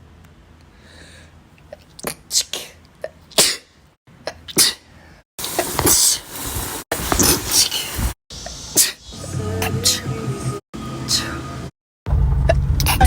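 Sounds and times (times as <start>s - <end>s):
person sneezing: 2.0s - 3.7s, 4.4s - 4.9s, 8.8s - 9.0s.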